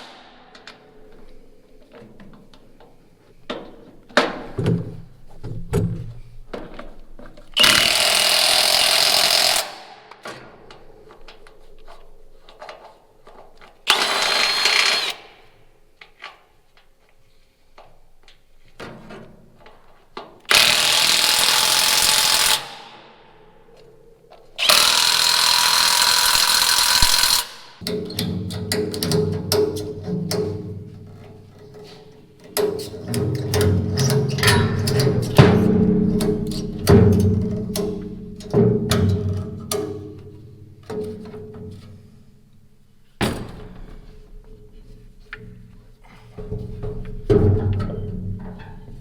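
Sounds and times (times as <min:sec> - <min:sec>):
power tool running: 0:07.6 - 0:09.8, 0:13.9 - 0:15.4, 0:20.5 - 0:23.0, 0:24.6 - 0:27.8.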